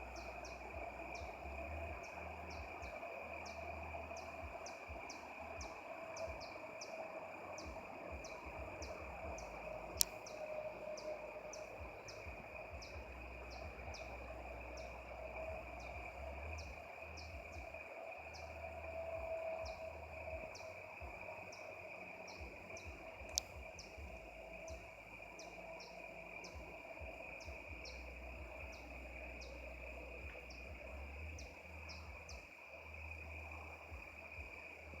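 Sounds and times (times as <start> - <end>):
faint wavering hum: 0.0 - 35.0
insects chirping: 0.0 - 35.0
sharp clicks: 23.2 - 23.6.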